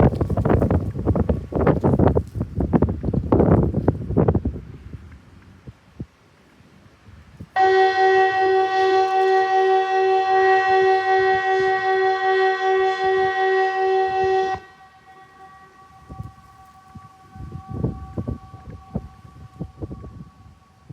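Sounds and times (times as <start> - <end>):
electronic siren chord: 7.6 - 20.9
faint siren tone: 7.6 - 20.9.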